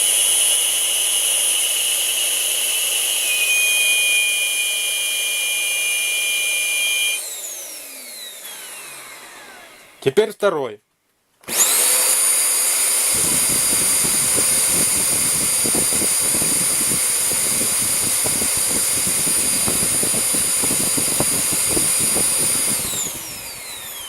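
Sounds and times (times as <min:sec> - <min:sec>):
vacuum cleaner running: 0:00.0 - 0:10.0, 0:11.4 - 0:24.0
high-pitched whistle: 0:03.2 - 0:07.3.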